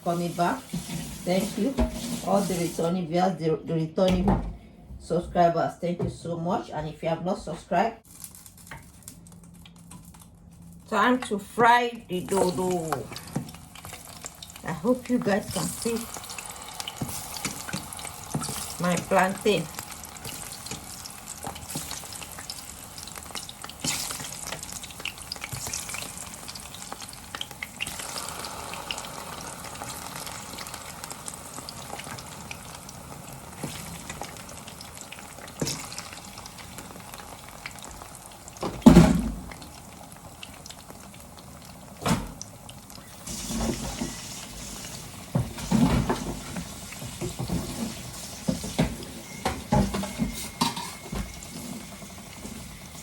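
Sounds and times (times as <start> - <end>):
plantain sizzling in hot oil: 0.0 - 3.0, 11.6 - 53.0.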